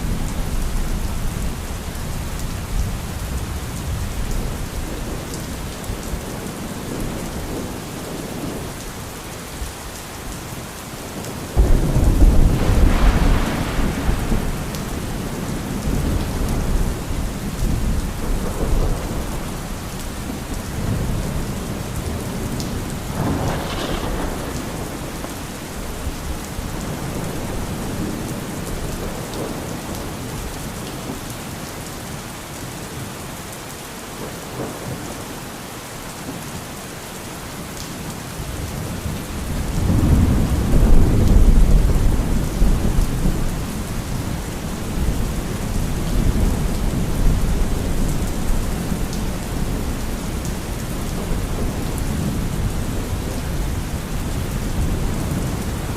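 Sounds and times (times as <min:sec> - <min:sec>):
steady rain falling: 0:00.0 - 0:55.9
thunder crack: 0:11.6 - 0:17.0, 0:23.1 - 0:27.6
deep thunder rumble: 0:11.6 - 0:29.8, 0:38.6 - 0:55.9.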